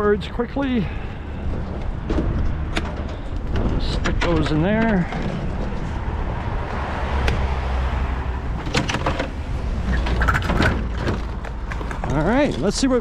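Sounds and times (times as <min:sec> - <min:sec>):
short knocks and clatters: 0:08.6 - 0:12.8.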